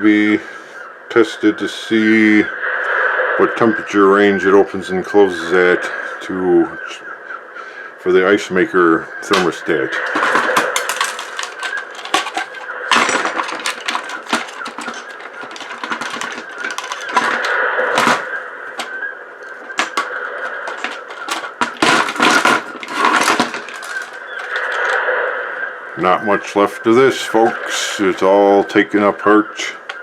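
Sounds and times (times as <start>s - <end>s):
plastic parts clicking and clattering: 9.2s - 25.1s.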